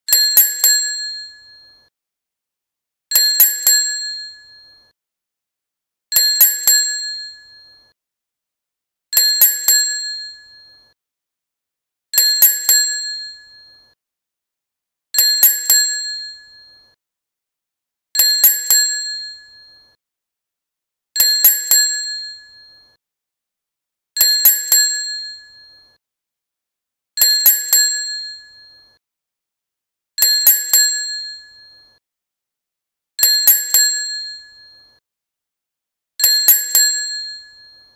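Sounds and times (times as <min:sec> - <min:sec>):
boxing ring bell ringing: 0:00.1 - 0:01.9, 0:03.1 - 0:04.9, 0:06.1 - 0:07.9, 0:09.2 - 0:11.0, 0:12.2 - 0:14.0, 0:15.2 - 0:16.9, 0:18.2 - 0:20.0, 0:21.2 - 0:22.9, 0:24.2 - 0:26.0, 0:27.2 - 0:29.0, 0:30.2 - 0:31.8, 0:33.3 - 0:35.0, 0:36.2 - 0:37.9.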